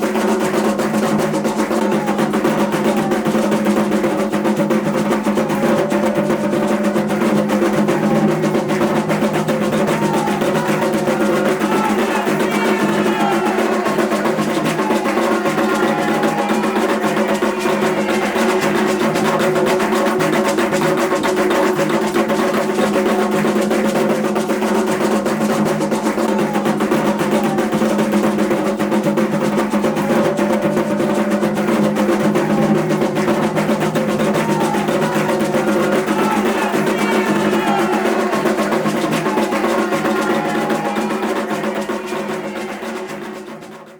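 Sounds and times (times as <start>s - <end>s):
fast continuous drumming: 0.0s - 43.9s
faint sliding voices: 7.8s - 23.6s, 34.1s - 43.9s.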